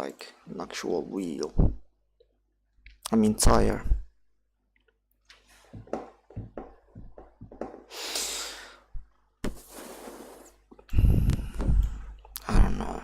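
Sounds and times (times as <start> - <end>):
person breathing out: 7.9 - 9.0.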